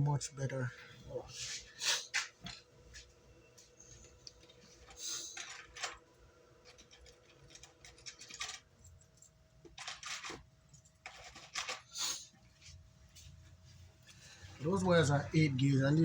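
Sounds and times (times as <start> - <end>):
faint steady hum: 0.0 - 16.0
small hard parts clicking and rattling: 4.0 - 12.7.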